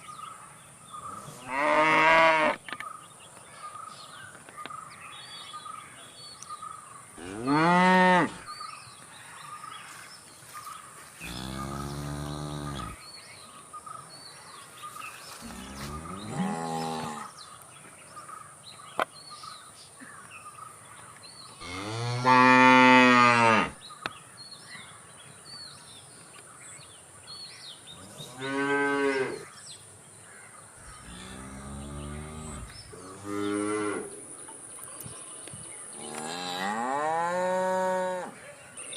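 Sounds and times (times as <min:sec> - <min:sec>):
cattle mooing: 0:11.2 - 0:13.0.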